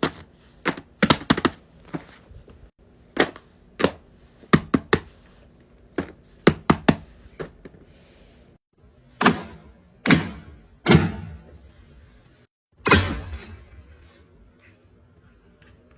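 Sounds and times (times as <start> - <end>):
heavy thunks of hard objects: 9.2 - 11.6, 12.8 - 14.0.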